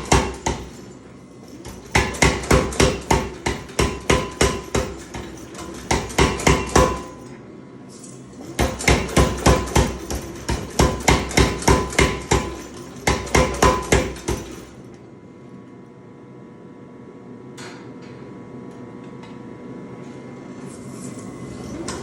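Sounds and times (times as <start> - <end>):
power hammer striking hot steel: 0.0 - 0.9, 1.5 - 7.3, 8.4 - 14.7.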